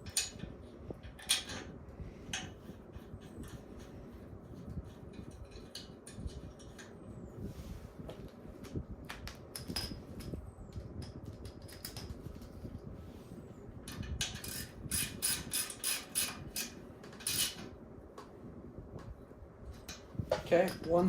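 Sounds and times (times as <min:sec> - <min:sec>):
ratchet clicking: 0:14.2 - 0:17.6.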